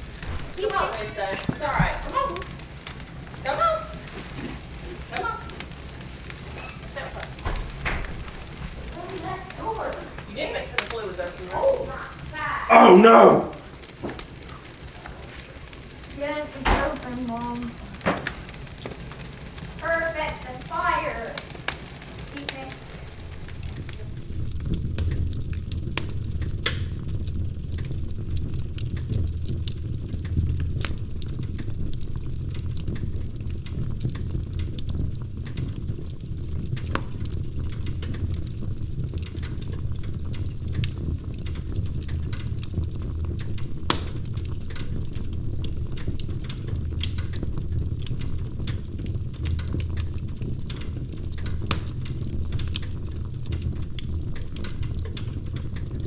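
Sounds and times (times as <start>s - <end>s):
fire burning with low rumble: 0.0s - 12.8s, 13.4s - 56.0s
logs crackling and popping: 0.0s - 56.0s.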